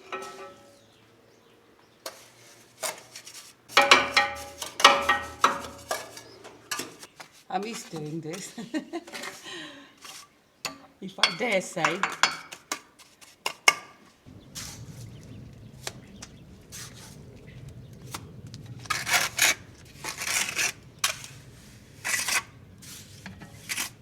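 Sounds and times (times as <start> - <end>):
trowel scraping on mortar: 2.0 - 9.4, 16.7 - 24.0
low steady hum: 14.3 - 24.0.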